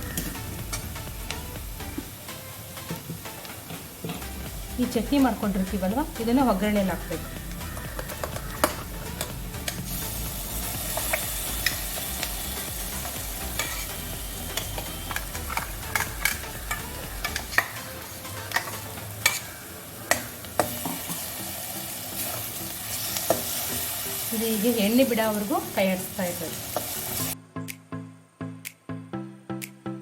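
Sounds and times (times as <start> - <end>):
chutney sizzling in hot oil: 0.0 - 27.4
spoon scraping pan: 2.8 - 4.5, 6.7 - 10.2, 10.9 - 21.4.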